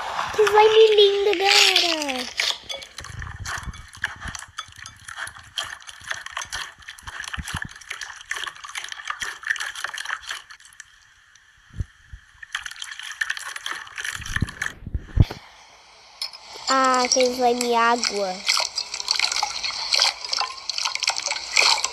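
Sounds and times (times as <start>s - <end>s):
wet slime clicking and crackling: 1.4s - 10.9s, 16.8s - 21.9s.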